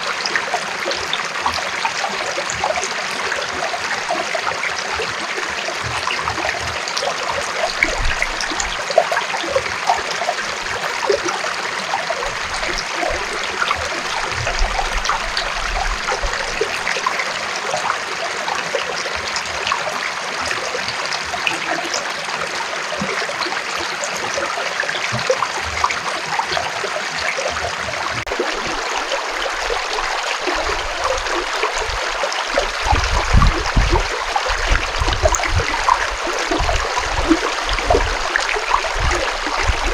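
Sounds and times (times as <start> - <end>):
stream flowing with splashes: 0.0 - 39.9
low thumps: 28.3 - 39.9.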